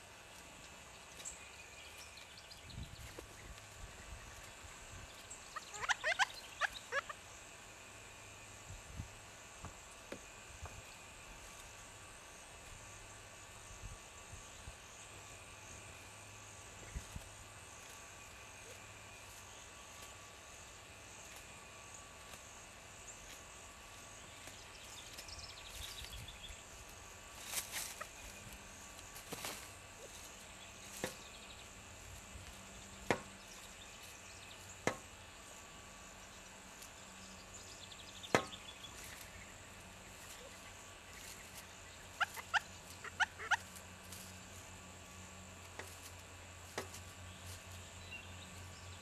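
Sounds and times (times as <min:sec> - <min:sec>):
insects droning: 0:00.0 - 0:49.0
woodpecker knocking: 0:42.0 - 0:43.7.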